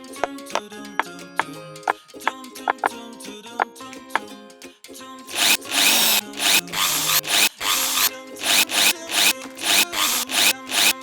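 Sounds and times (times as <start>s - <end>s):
toy drill motor whirring: 5.3s - 11.0s.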